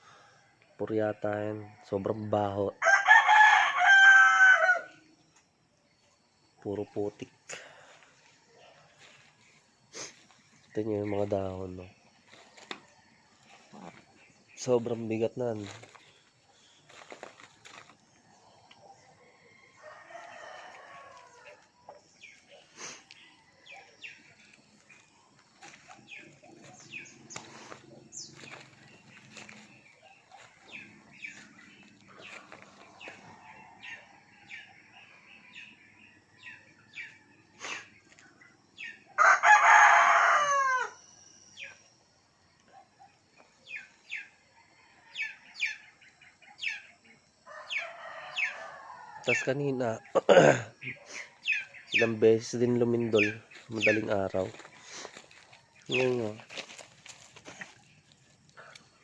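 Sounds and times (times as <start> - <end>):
rooster crowing: 2.7 - 5.0, 18.3 - 22.0, 39.2 - 41.3, 47.4 - 49.7.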